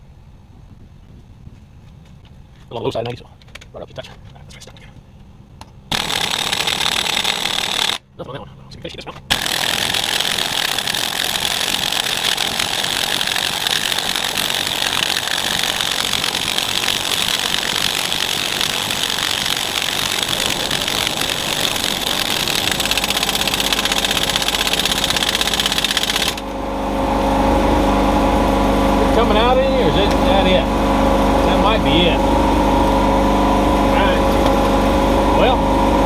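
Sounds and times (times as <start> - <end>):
pneumatic impact wrench hammering: 5.9 - 8.0, 9.3 - 26.5
air compressor motor hum: 5.9 - 8.1, 9.3 - 36.0.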